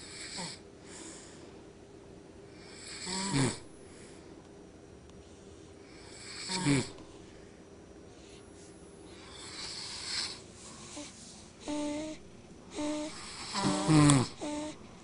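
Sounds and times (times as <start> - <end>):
person snoring: 2.6 - 3.7, 6.0 - 7.0, 9.2 - 14.8.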